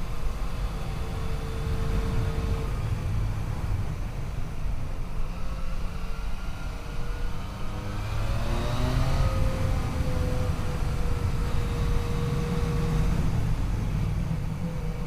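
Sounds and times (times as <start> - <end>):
wind rushing on microphone: 0.0 - 15.0.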